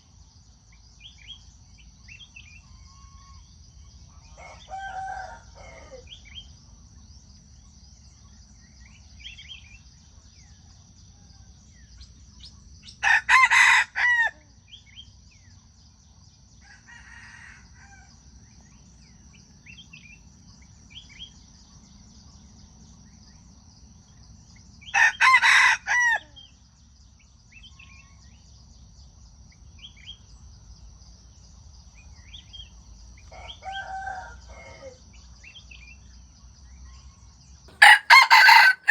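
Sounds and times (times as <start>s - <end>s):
rooster crowing: 4.4s - 6.1s, 13.0s - 14.4s, 25.0s - 26.3s, 37.7s - 38.9s.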